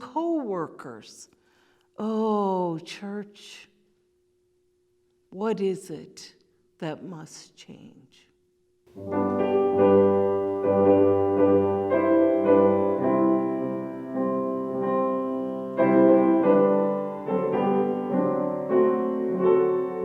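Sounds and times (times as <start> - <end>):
slow piano chords: 8.9 - 20.0.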